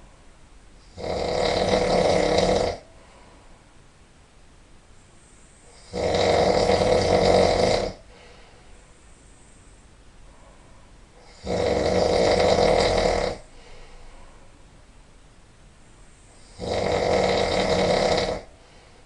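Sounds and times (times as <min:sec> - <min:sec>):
person snoring loudly: 0:00.8 - 0:02.8, 0:05.7 - 0:08.2, 0:11.2 - 0:13.6, 0:16.4 - 0:18.5.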